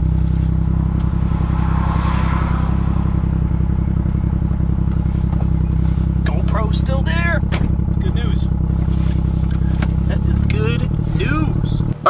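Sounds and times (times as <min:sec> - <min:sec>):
car engine running at low speed: 0:00.0 - 0:12.0
brief rush of noise: 0:00.4 - 0:06.1.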